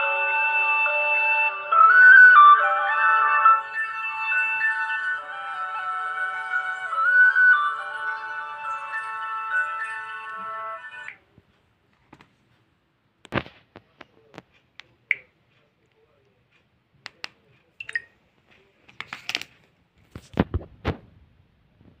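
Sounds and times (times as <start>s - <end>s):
phone alarm ringtone: 6.5s - 11.1s
phone handling clicks and taps: 18.9s - 19.5s.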